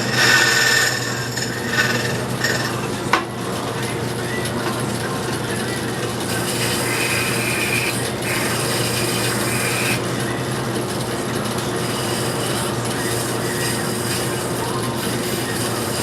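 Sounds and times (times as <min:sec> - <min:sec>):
key cutter rasping: 0:00.0 - 0:03.2
machine motor hum: 0:00.0 - 0:16.0.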